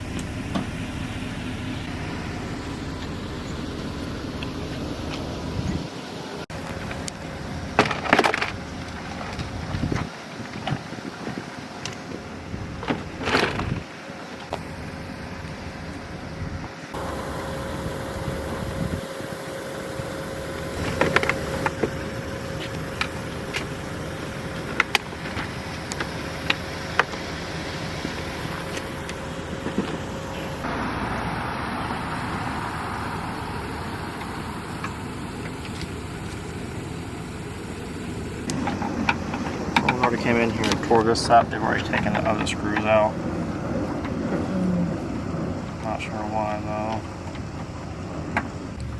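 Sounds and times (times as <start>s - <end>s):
vehicle engine hum: 0.0s - 48.9s
sharp clicks and knocks: 38.4s - 42.9s.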